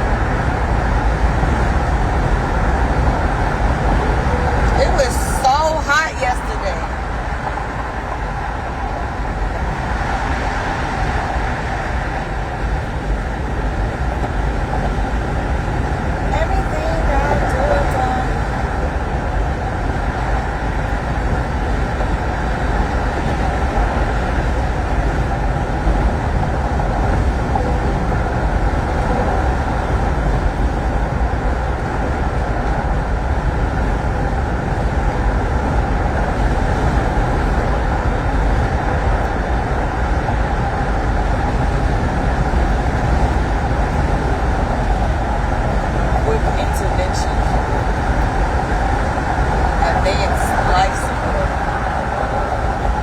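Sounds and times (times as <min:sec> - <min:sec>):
road and engine noise inside car: 0:00.0 - 0:53.0.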